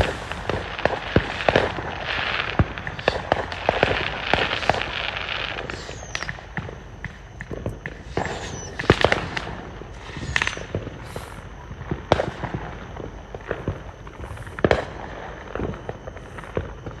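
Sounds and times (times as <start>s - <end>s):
fireworks bangs and crackling: 0.0s - 17.0s
short hisses: 8.0s - 8.9s.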